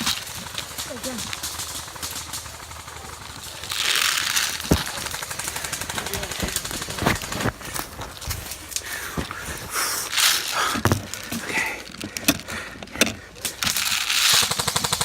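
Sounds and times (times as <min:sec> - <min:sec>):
airsoft guns firing: 0:00.0 - 0:11.4, 0:13.4 - 0:15.0.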